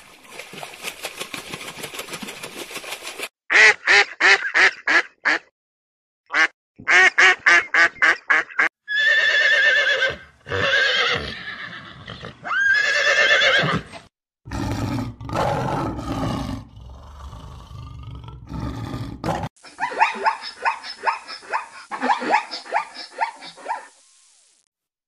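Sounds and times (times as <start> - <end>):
duck quacks: 3.5 - 5.5, 6.3 - 8.7
horse whinnies: 8.9 - 14.1.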